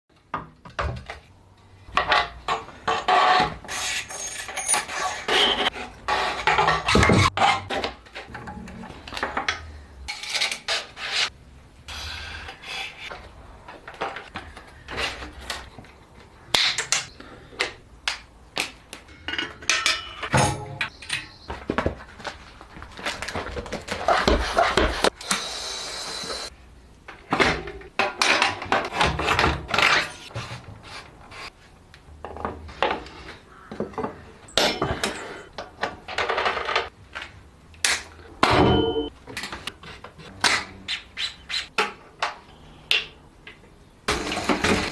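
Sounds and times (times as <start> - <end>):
tools and parts clinking: 1.9 - 5.8, 18.9 - 21.8.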